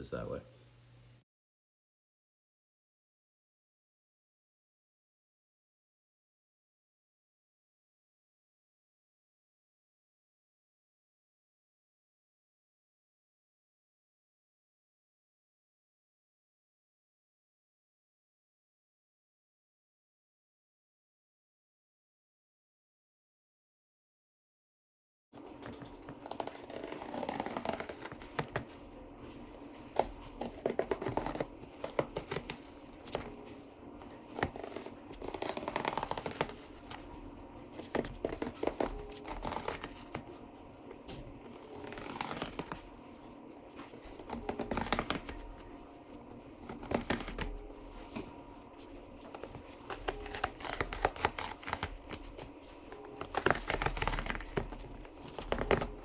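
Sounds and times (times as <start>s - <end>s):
razor blade scoring foam: 25.7s - 40.3s, 41.1s - 43.1s, 43.7s - 56.0s
foam being torn: 25.7s - 40.4s, 41.0s - 43.0s, 43.7s - 56.0s.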